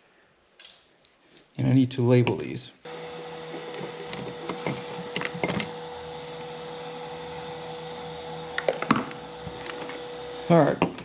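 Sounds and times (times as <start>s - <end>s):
steady hum: 2.9s - 11.0s.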